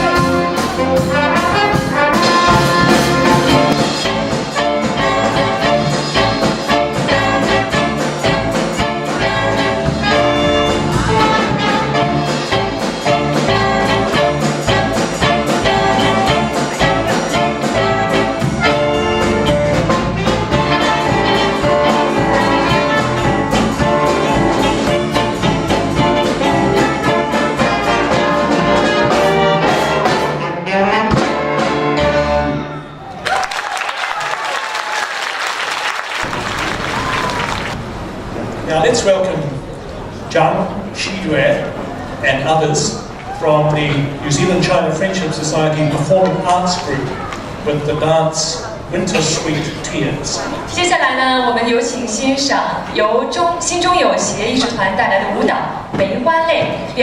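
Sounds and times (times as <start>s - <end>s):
jazz big band playing: 0.0s - 33.0s, 35.9s - 38.7s.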